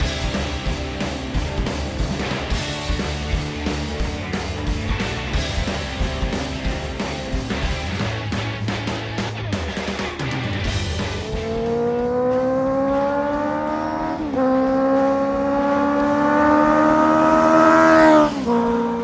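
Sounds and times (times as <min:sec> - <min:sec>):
motorcycle accelerating hard: 0:00.0 - 0:08.3, 0:10.2 - 0:19.0.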